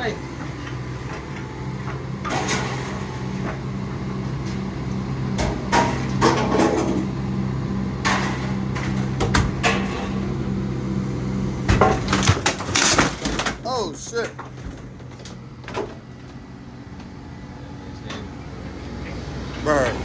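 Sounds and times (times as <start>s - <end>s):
vehicle engine idling: 0.0s - 12.6s, 13.6s - 20.0s
sharp knocks and bangs: 5.3s - 7.1s, 8.0s - 10.3s, 11.6s - 13.6s.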